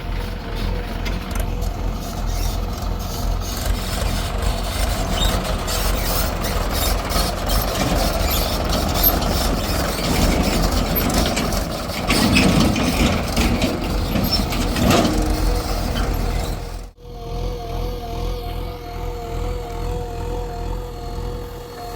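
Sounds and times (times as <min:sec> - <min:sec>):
heavy diesel machinery running: 0:00.0 - 0:21.9
sharp knocks and clanks: 0:07.5 - 0:16.8.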